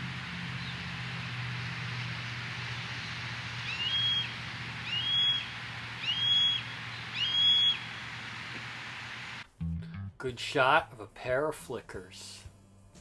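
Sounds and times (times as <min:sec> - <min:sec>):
hawk begging squeal: 0:03.0 - 0:08.4.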